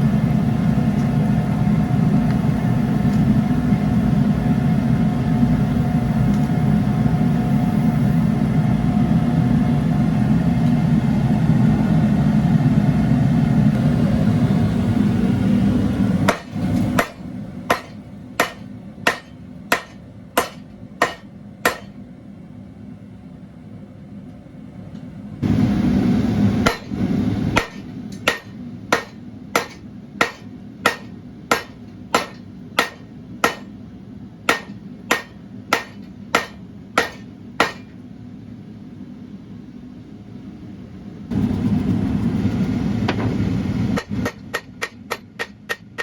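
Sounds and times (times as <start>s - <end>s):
hammer striking steel on anvil: 16.3s - 22.0s, 26.6s - 33.8s, 34.5s - 38.0s, 44.0s - 46.0s.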